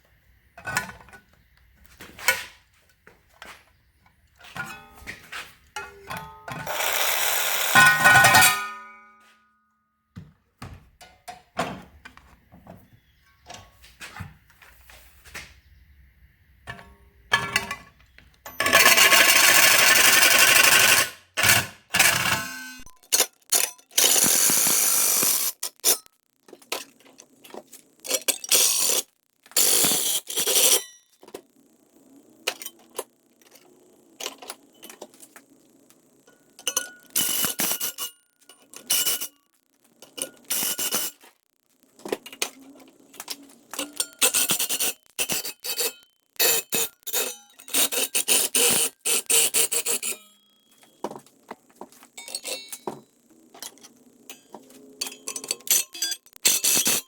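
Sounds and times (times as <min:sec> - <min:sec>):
power tool cutting metal sheet: 0:06.6 - 0:08.6, 0:18.7 - 0:22.9, 0:24.0 - 0:26.0.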